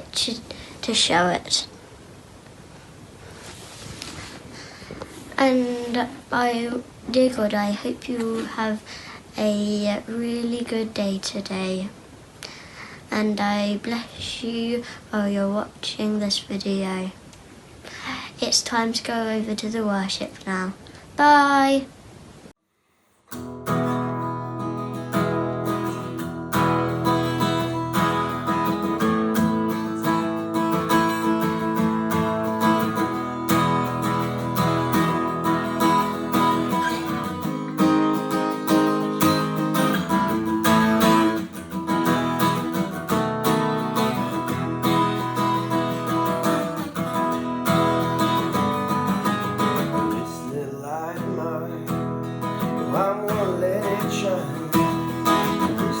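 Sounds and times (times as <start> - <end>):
strummed acoustic guitar: 23.3 - 56.0.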